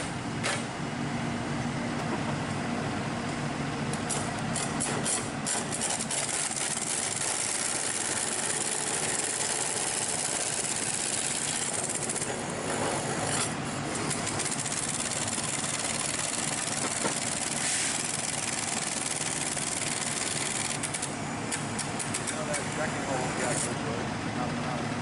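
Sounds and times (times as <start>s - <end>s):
engine idling: 13.6s - 23.2s.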